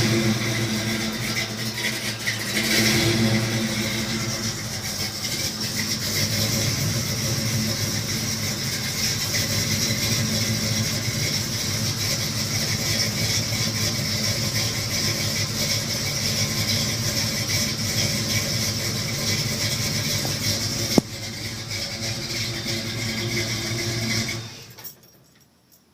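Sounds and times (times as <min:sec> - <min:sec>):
high whine: 0:00.0 - 0:17.0
engine running steadily: 0:00.0 - 0:24.9.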